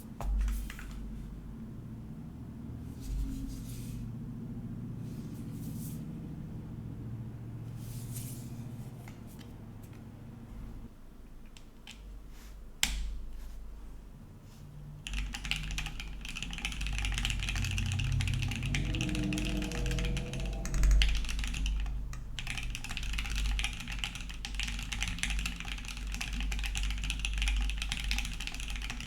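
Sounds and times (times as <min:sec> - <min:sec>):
rapid typing on mechanical keyboard: 0:15.0 - 0:29.0
low hum: 0:16.1 - 0:23.8.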